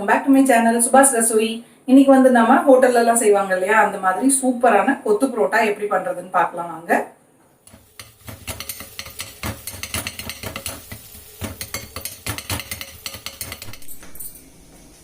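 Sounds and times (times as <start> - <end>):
metal utensils clinking on pan: 7.7 - 14.4.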